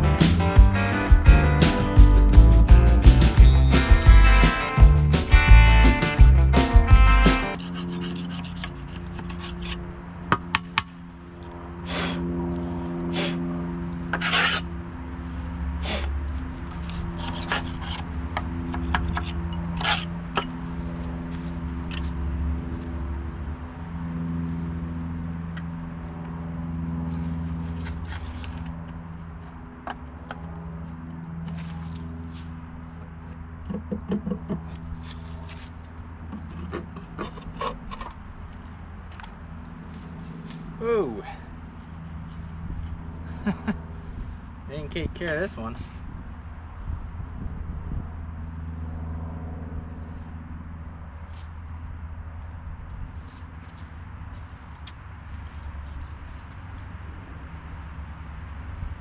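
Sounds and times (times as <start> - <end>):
hand tools scraping engine parts: 7.3 - 9.8, 14.0 - 14.7, 16.7 - 22.3, 33.3 - 40.8.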